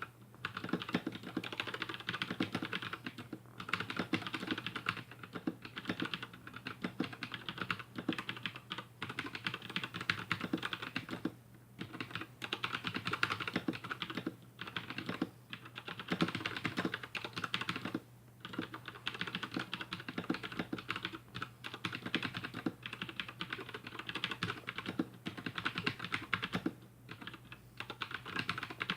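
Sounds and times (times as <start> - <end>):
mechanical keyboard typing: 0.4 - 28.9.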